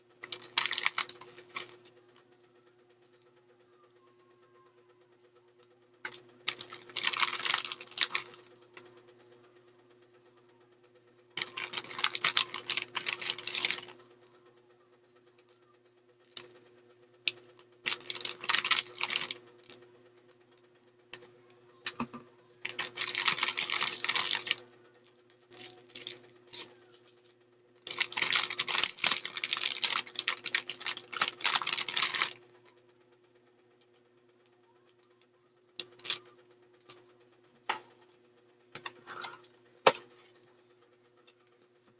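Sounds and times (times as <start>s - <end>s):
steady low hum: 0.0s - 41.9s
packaging rustling and clicking: 0.2s - 1.8s, 6.5s - 8.4s, 11.4s - 13.9s, 17.3s - 19.8s, 22.6s - 24.6s, 25.5s - 26.7s, 27.9s - 32.4s.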